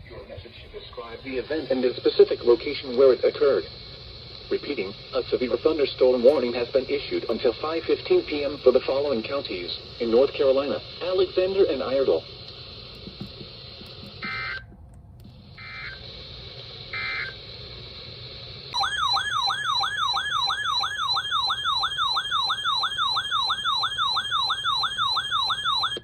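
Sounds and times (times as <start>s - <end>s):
radio hiss: 0.0s - 14.7s, 15.3s - 18.8s
warbling alert siren: 14.2s - 14.6s, 15.6s - 16.0s, 16.9s - 17.4s, 18.8s - 26.0s.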